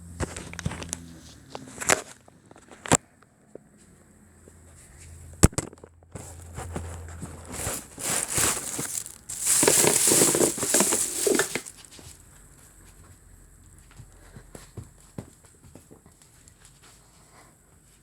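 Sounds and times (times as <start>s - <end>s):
rustling and crinkling: 6.2s - 12.2s.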